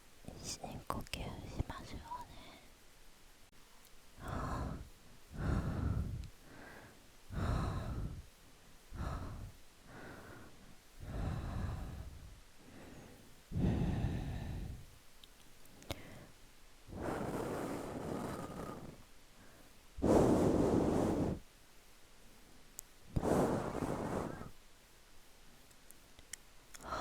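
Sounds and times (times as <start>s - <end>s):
slow breathing into microphone: 4.2s - 15.0s, 15.7s - 21.4s, 22.2s - 24.6s.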